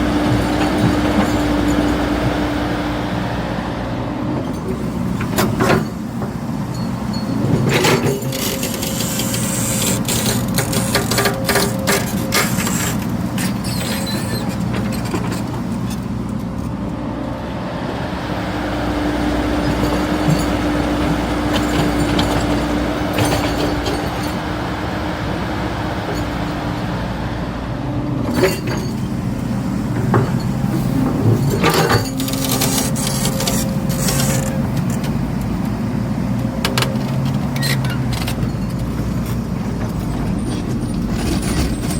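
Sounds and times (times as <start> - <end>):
excavator diesel engine running: 0.0 - 41.9
metallic clanks and knocks: 29.9 - 35.5.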